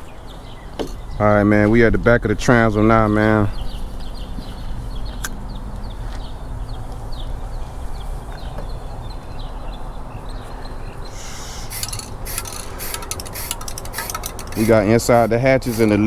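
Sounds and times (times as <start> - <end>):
small birds chirping: 0.0 - 16.0
steady low rumble: 1.0 - 8.1
sharp clicks: 11.7 - 16.0.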